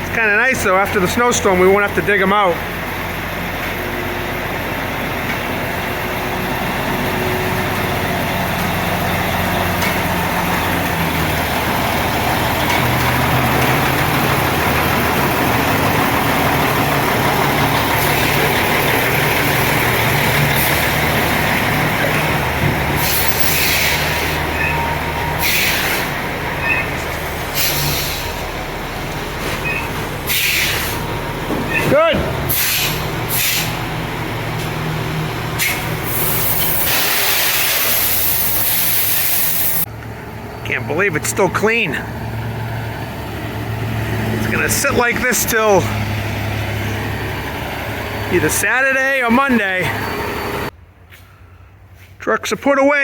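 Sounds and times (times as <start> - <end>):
truck diesel engine running: 0.0 - 53.0
air brake hisses: 23.0 - 24.5, 25.4 - 26.1, 27.5 - 28.4, 30.3 - 31.0, 32.5 - 33.8.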